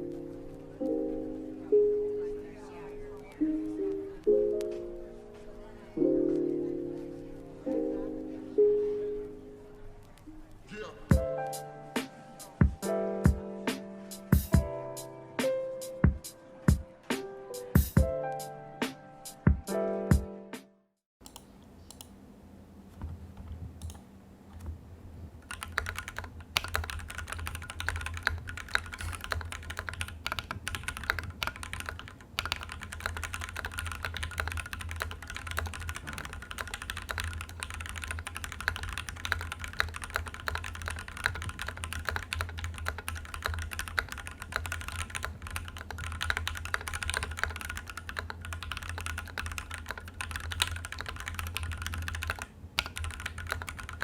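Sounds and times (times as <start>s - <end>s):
fast typing on mechanical keyboard: 25.4s - 54.0s.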